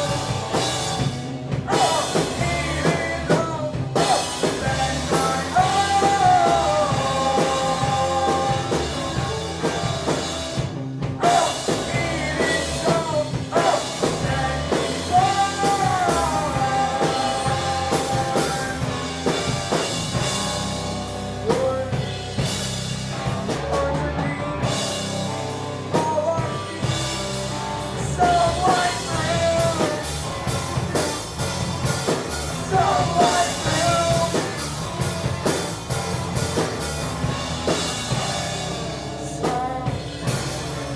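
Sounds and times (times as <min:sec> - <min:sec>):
person singing: 0:00.0 - 0:09.8, 0:11.2 - 0:20.2, 0:23.5 - 0:31.1, 0:32.4 - 0:35.2, 0:38.5 - 0:40.9
rock band playing: 0:00.0 - 0:40.9.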